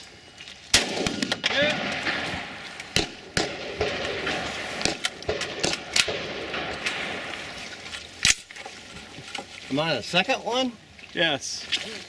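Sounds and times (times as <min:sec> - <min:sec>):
rifle shots hitting steel targets: 0:00.7 - 0:07.3.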